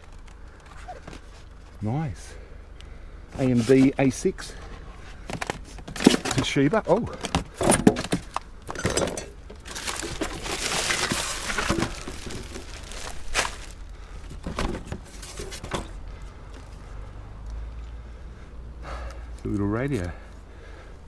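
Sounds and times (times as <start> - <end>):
rustling: 3.3 - 17.0
hard items knocking and clattering: 4.6 - 16.0.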